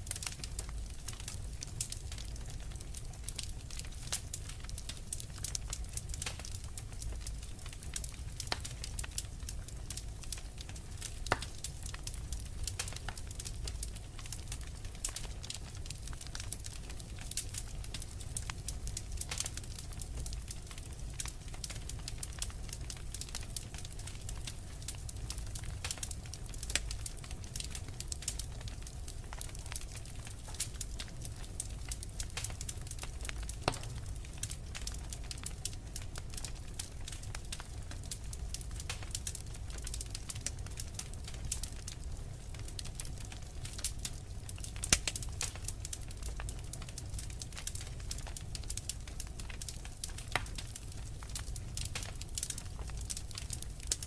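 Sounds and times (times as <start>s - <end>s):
wood fire crackling: 0.0s - 54.0s
sharp pops and snaps: 10.7s - 12.0s, 31.8s - 36.6s.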